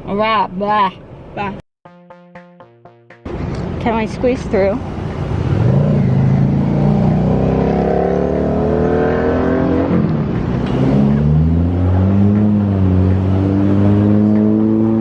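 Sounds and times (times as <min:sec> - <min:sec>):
car engine accelerating: 0:04.8 - 0:15.0.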